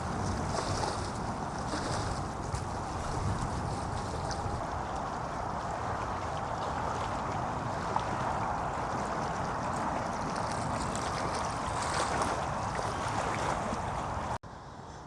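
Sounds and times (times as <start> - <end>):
distant road traffic: 4.2 - 15.0.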